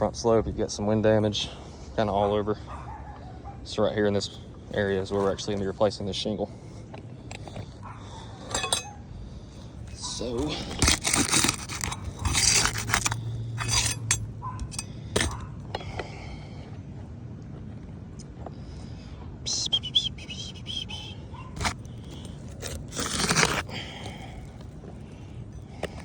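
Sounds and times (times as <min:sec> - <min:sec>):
metal tool scraping roof shingles: 0:08.5 - 0:09.0, 0:09.9 - 0:15.4, 0:21.6 - 0:23.8.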